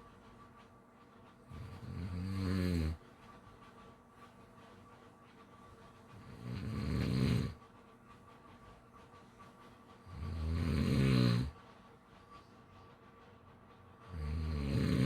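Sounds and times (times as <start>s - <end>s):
snoring: 1.6s - 3.0s, 6.4s - 7.6s, 10.2s - 11.5s, 14.1s - 15.0s.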